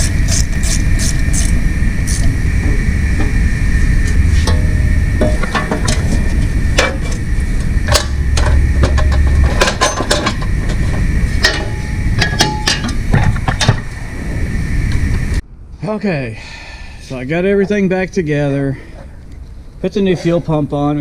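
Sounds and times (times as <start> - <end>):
steady low rumble: 0.0 - 21.0
metal tools clinking on engine parts: 7.9 - 10.8, 11.4 - 13.0.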